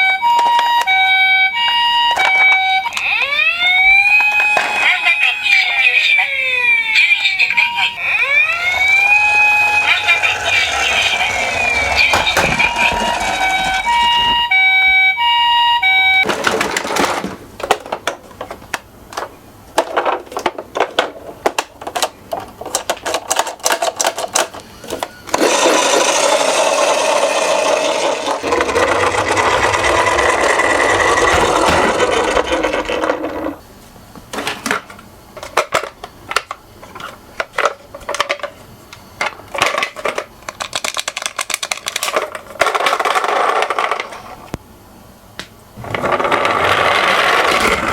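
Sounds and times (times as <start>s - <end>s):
electronic tone melody: 7.4s - 16.2s
toy cars clicking and rattling: 19.8s - 33.6s, 39.6s - 44.2s.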